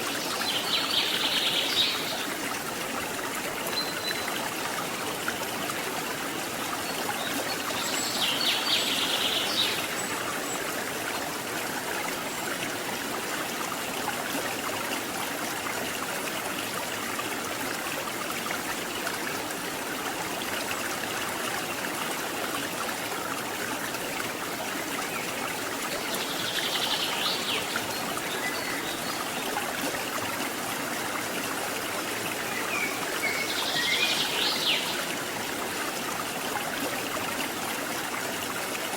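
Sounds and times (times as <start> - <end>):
waterfall and river rushing: 0.0 - 4.3, 7.8 - 10.6, 25.8 - 29.4, 31.4 - 37.8.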